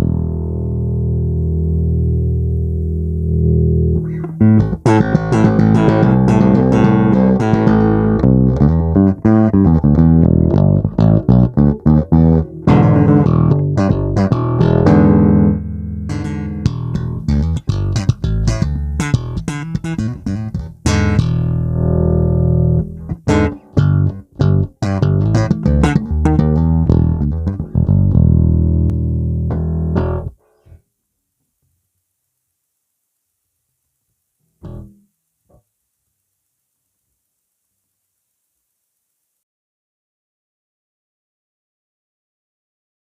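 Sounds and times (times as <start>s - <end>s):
electric bass plucked notes: 0.0s - 30.4s, 34.6s - 35.0s.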